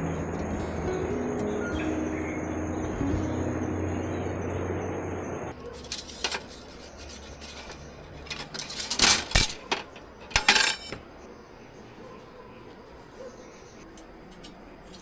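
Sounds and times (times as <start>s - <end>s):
small metal objects clinking: 5.7s - 11.1s.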